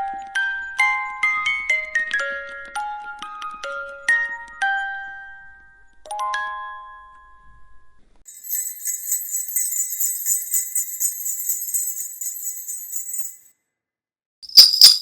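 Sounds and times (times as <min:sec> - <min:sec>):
music box chime: 0:08.3 - 0:13.4
jingle bells shaken: 0:08.3 - 0:13.5, 0:14.5 - 0:15.0.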